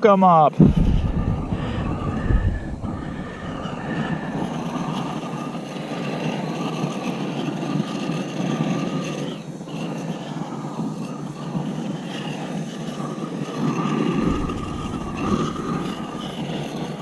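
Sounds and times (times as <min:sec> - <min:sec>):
faint whistle-like tones: 0:00.6 - 0:05.8, 0:13.6 - 0:17.0
heat tool rushing hiss: 0:14.0 - 0:17.0.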